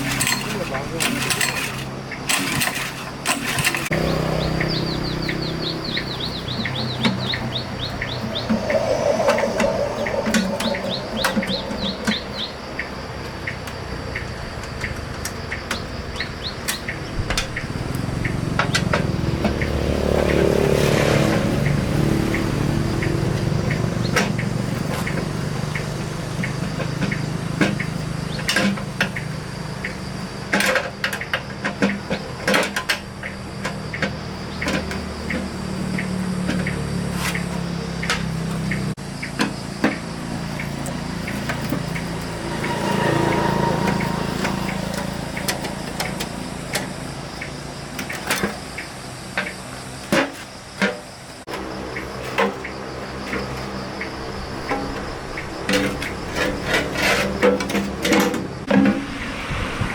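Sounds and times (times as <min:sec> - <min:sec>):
small engine running: 0:00.0 - 0:12.4, 0:16.8 - 0:30.4, 0:34.3 - 0:48.8
birds chirping: 0:03.1 - 0:59.9.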